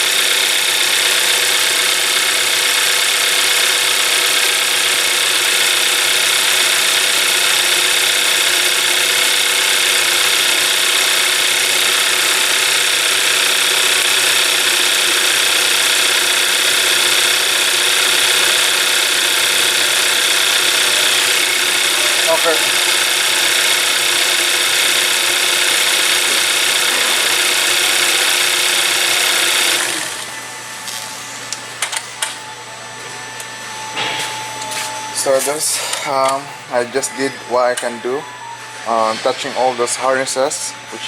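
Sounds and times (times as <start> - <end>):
car engine idling loudly: 0.0 - 30.4.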